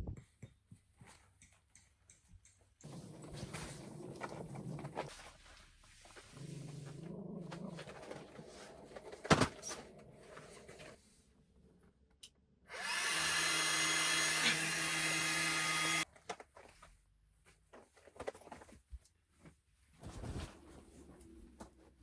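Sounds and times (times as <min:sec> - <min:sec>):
electric motor humming: 0:12.7 - 0:16.0.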